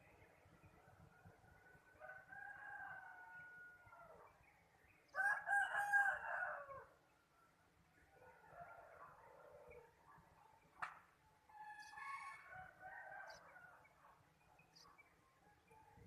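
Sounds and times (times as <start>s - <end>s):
distant rooster crowing: 1.9s - 4.2s, 5.2s - 7.0s, 11.5s - 13.9s
loud rooster crowing: 5.2s - 6.8s.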